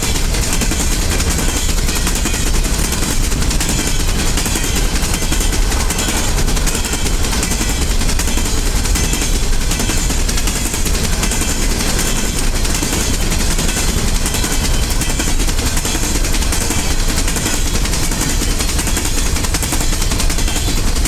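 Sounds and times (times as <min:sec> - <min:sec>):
deep train rumble: 0:00.0 - 0:21.0
train wheels clattering on rails: 0:00.0 - 0:21.0.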